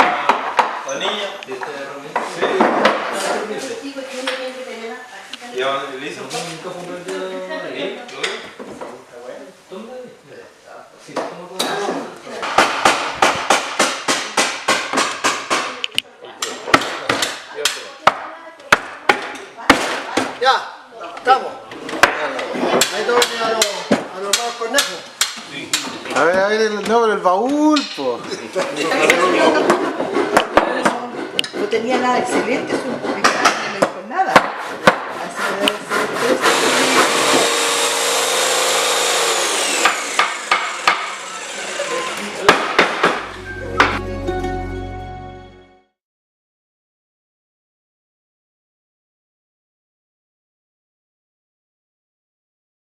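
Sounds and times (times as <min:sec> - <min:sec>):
hammer striking wood: 0:00.0 - 0:00.8, 0:12.4 - 0:15.8, 0:22.0 - 0:25.9, 0:33.2 - 0:41.6, 0:42.4 - 0:44.0
knocks on wood: 0:12.4 - 0:15.8, 0:33.2 - 0:35.2, 0:39.8 - 0:41.2, 0:42.5 - 0:44.0
power tool cutting wood: 0:35.6 - 0:44.0.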